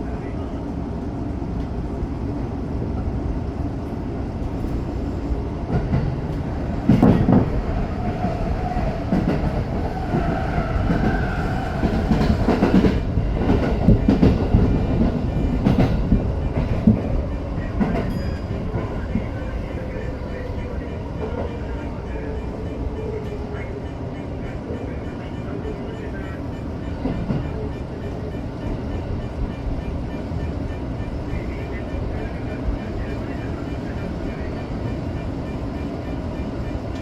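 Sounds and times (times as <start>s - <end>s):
train rumbling: 0.0s - 37.0s.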